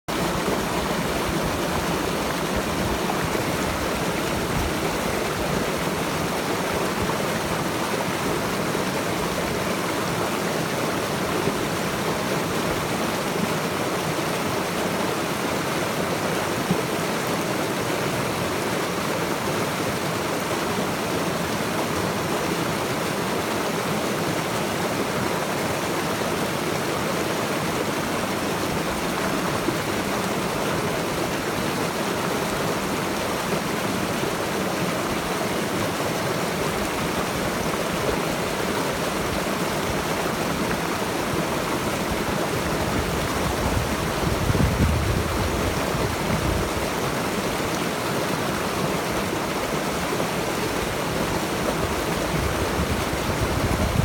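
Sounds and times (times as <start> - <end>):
stream rushing: 0.1 - 54.0.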